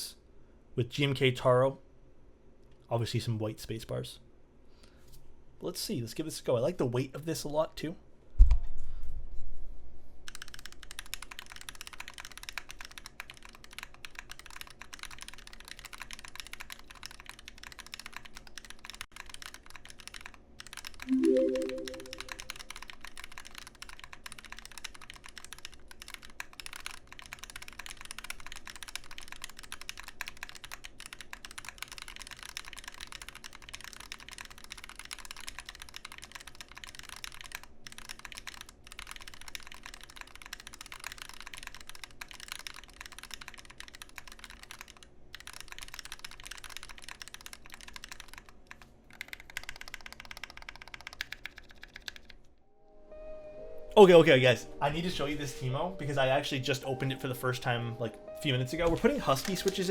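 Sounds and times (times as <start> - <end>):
mechanical keyboard typing: 10.3 - 52.4, 58.9 - 59.9.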